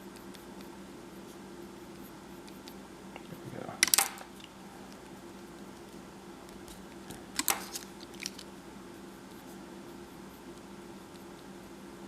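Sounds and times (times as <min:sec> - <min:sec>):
pencil scratching on paper: 0:00.0 - 0:02.8, 0:08.9 - 0:11.8
faint steady hum: 0:00.0 - 0:12.0.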